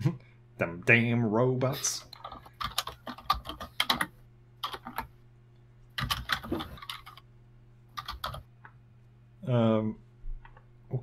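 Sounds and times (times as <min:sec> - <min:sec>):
faint steady hum: 0:00.0 - 0:11.0
computer keyboard typing: 0:02.1 - 0:05.1, 0:06.0 - 0:07.2, 0:08.0 - 0:08.5.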